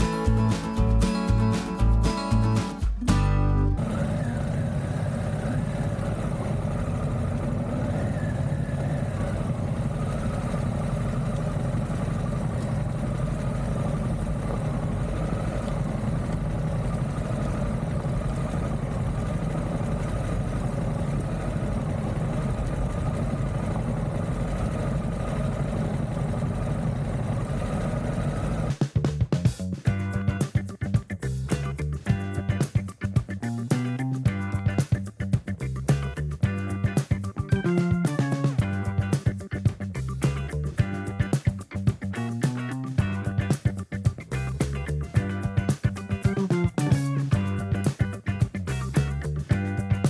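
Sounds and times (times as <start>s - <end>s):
motorcycle engine cruising: 29.0s - 50.0s.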